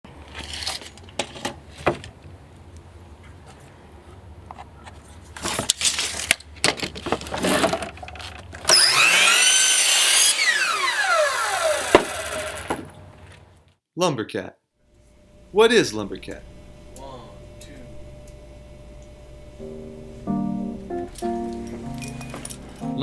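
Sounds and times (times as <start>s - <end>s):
power tool running: 8.7s - 13.0s.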